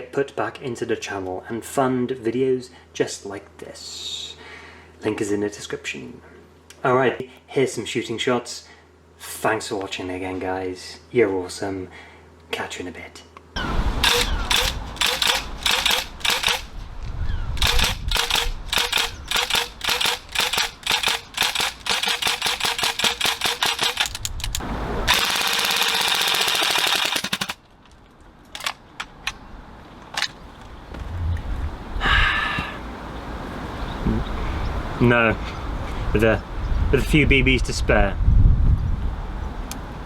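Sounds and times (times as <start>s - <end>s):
airsoft gun firing: 14.0s - 16.7s, 17.6s - 24.2s, 25.1s - 27.6s.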